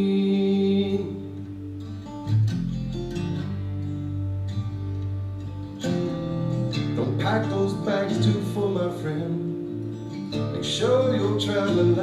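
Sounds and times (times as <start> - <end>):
person singing: 0.0 - 1.5, 7.0 - 9.5, 10.5 - 12.0
acoustic guitar strumming: 0.0 - 12.0.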